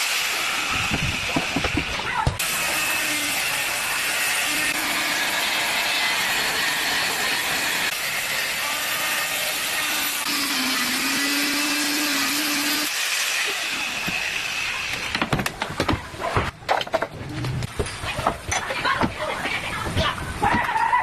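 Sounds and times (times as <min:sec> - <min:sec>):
power tool running: 0:00.0 - 0:15.2.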